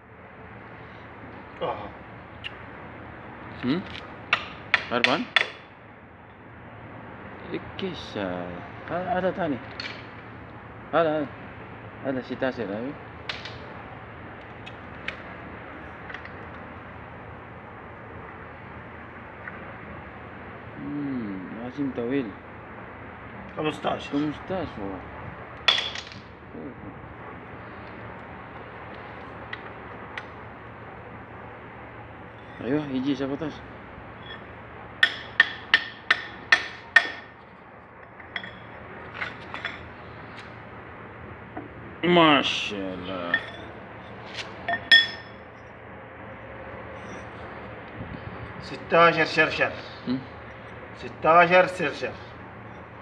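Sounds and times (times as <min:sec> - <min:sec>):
steady background noise: 0:00.0 - 0:53.0
metal striking metal: 0:44.6 - 0:45.4.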